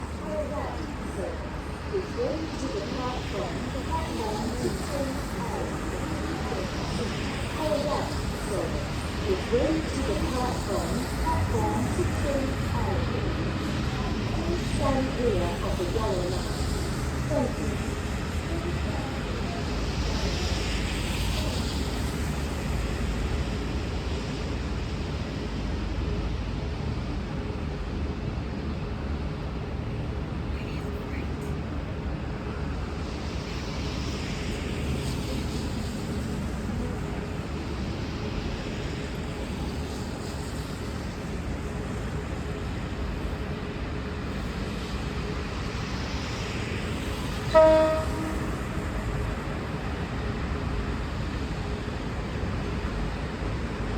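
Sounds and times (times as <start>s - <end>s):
diesel railcar running: 0.0s - 53.9s
hiss: 0.1s - 27.0s, 32.3s - 53.9s
train horn blast: 47.5s - 49.2s.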